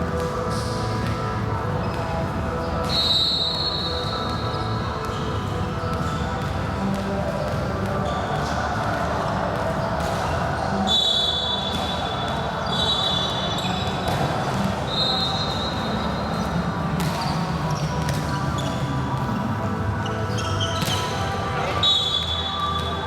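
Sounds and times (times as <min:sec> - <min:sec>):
murmur of spectators: 0:00.0 - 0:23.0
ball bouncing on court: 0:13.8 - 0:14.9, 0:16.4 - 0:18.8, 0:20.3 - 0:21.4.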